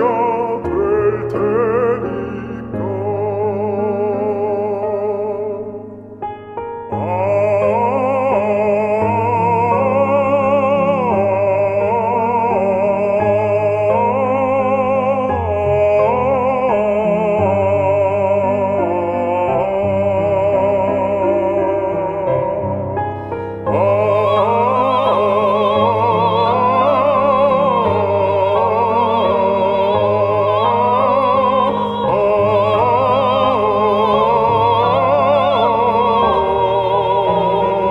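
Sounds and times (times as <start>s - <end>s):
slow background music: 0.0s - 37.9s.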